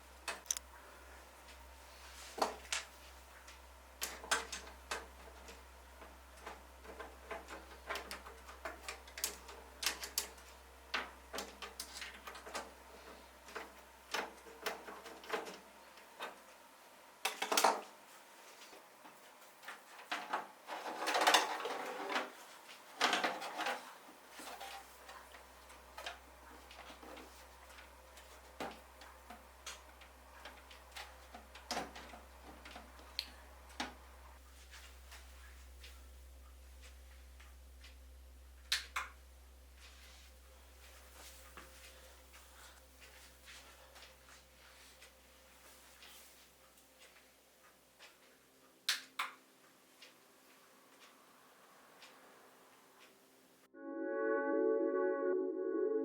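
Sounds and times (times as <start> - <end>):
computer parts clicking and clattering: 0.3 - 0.6, 4.0 - 12.8.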